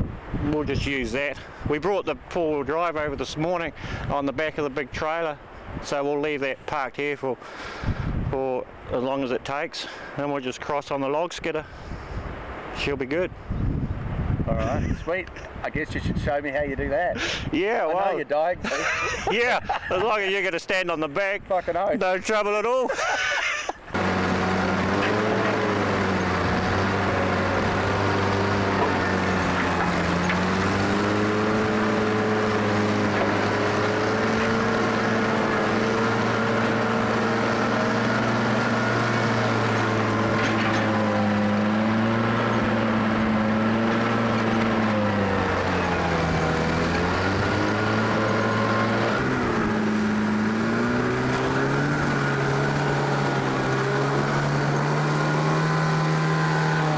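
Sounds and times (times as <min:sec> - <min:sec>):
diesel engine under load: 0:02.7 - 0:04.2, 0:23.9 - 0:56.9.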